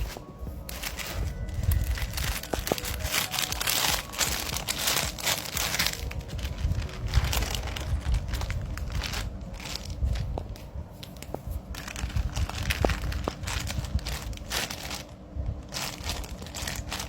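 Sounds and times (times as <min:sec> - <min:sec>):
low handling rumble: 0:00.0 - 0:17.0
plastic wrapping crinkling: 0:00.0 - 0:17.0.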